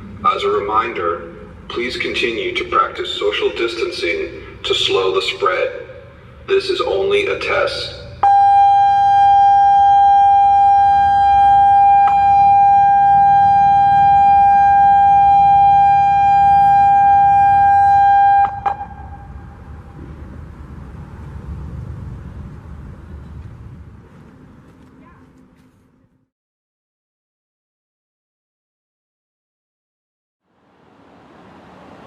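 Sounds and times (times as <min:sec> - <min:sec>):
warning system test tone: 0:08.1 - 0:19.8.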